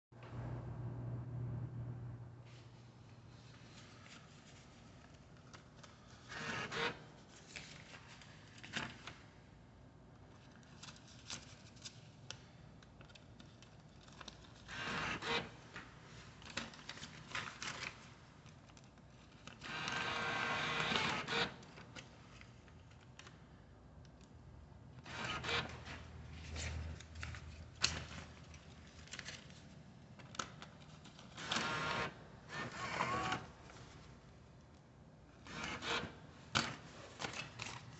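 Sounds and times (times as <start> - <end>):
rustling and clicking handling noise: 10.2 - 14.7, 15.6 - 19.6, 26.3 - 31.4, 36.3 - 37.9.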